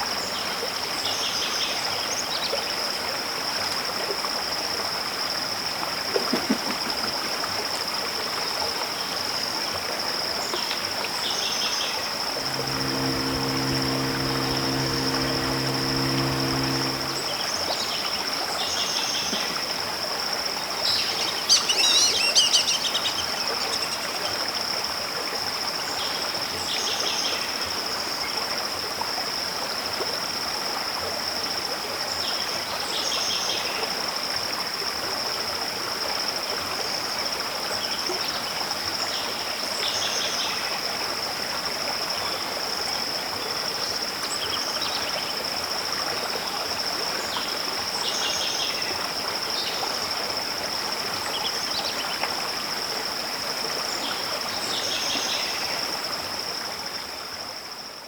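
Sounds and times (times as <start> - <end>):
high-pitched insect drone: 12.4 - 17.5.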